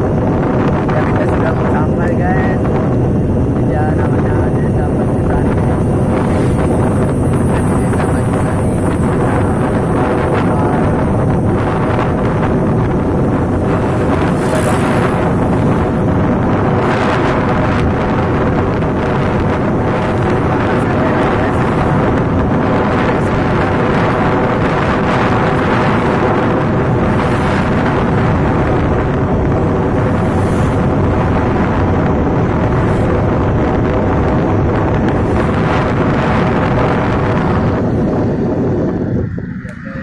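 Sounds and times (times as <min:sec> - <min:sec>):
engine drone: 0:00.0 - 0:40.0
wind buffeting microphone: 0:00.0 - 0:40.0.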